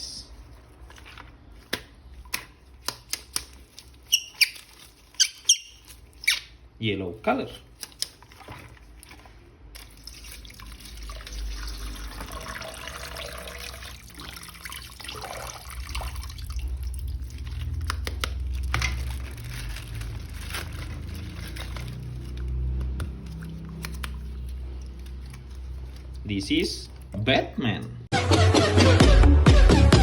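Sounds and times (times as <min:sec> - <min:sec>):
water running and splashing: 0:08.3 - 0:19.9.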